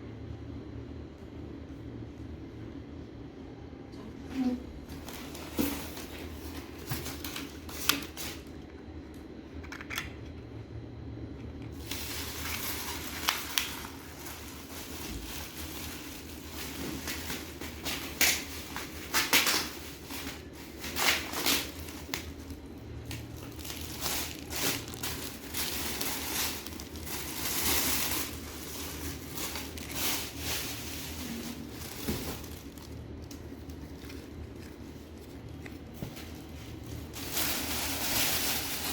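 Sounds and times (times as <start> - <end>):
low background hum: 0.0 - 38.9
packaging rustling and crinkling: 4.9 - 8.6, 11.7 - 38.9.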